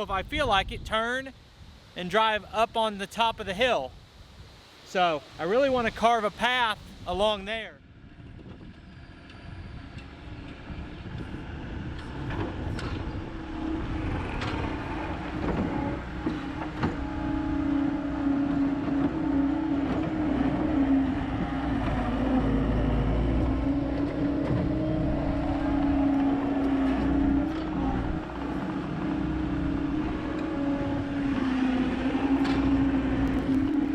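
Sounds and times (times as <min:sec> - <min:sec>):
diesel engine running under work: 0:08.1 - 0:33.9.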